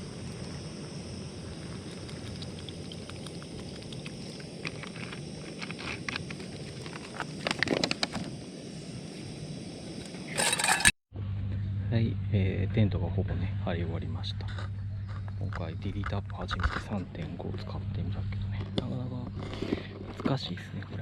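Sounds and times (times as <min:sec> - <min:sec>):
steady hiss: 0:00.0 - 0:10.9.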